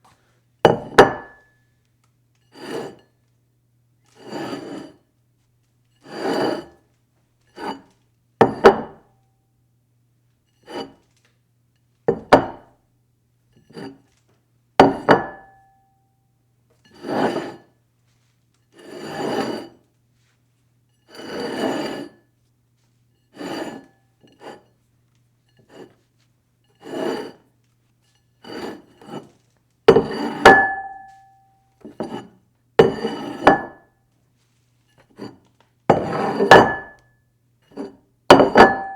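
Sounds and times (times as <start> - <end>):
dish scraping on a table: 0.7 - 1.5, 2.5 - 3.1, 4.1 - 5.0, 6.0 - 6.8, 7.5 - 9.0, 10.6 - 11.1, 12.1 - 12.6, 13.6 - 14.2, 14.8 - 15.5, 16.9 - 17.7, 18.7 - 19.8, 21.1 - 22.2, 23.3 - 24.7, 25.5 - 26.1, 26.7 - 27.5, 28.1 - 33.8, 35.0 - 37.0, 37.7 - 38.9.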